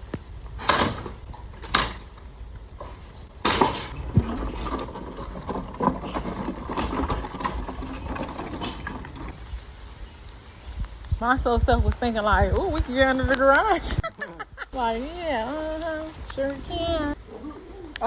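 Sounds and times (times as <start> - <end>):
rapid mechanical rattling: 0.0 - 13.6.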